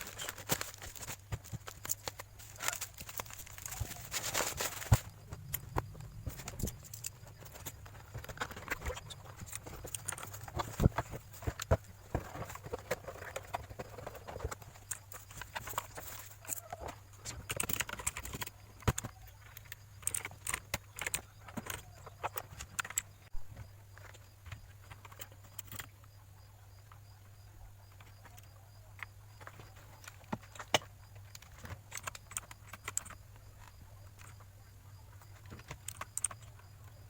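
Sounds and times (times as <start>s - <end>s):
packaging rustling: 0.0s - 16.4s
keyboard clicks and knocks: 35.4s - 37.0s.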